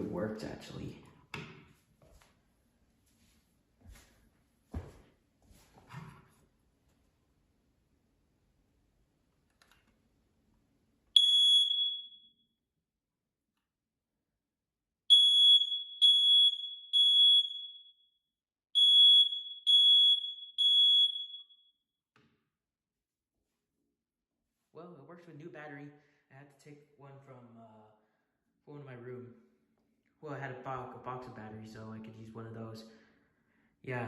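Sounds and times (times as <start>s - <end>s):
smoke alarm beeping: 11.2s - 12.4s, 15.1s - 18.1s, 18.8s - 21.8s.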